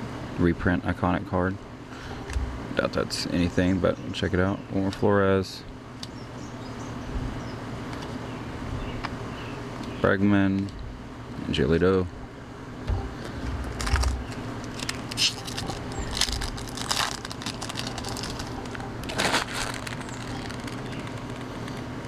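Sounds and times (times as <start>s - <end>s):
cards rustling and flicking: 13.0s - 22.0s.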